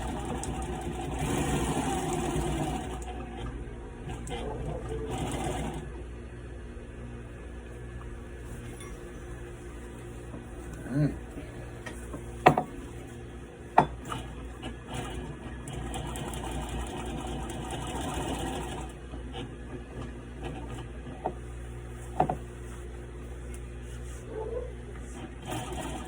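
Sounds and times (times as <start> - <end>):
sewing machine stitching: 0.0 - 6.0, 14.0 - 21.3, 25.0 - 26.0.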